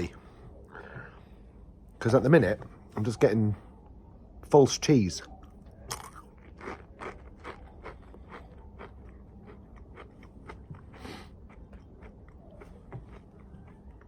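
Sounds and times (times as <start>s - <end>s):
person chewing crunchy chips: 5.4s - 14.0s.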